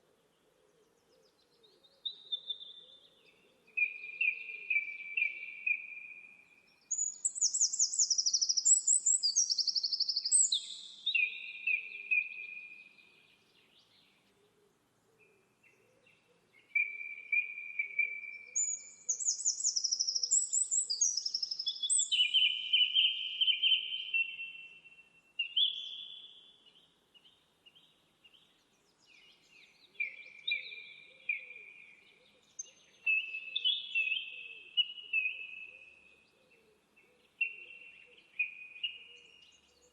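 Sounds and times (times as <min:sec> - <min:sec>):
songbird trilling: 0:06.9 - 0:12.3, 0:16.8 - 0:24.4.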